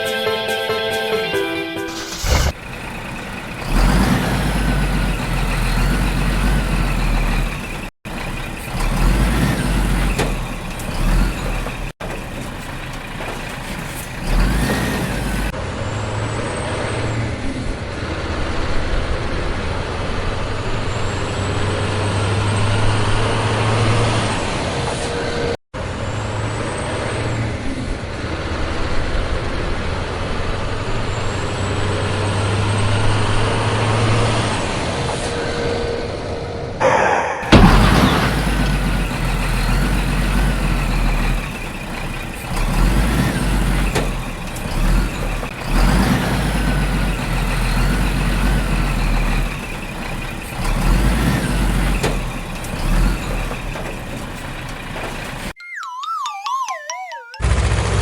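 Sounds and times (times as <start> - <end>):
truck engine running: 2.0 - 15.7, 37.4 - 55.6.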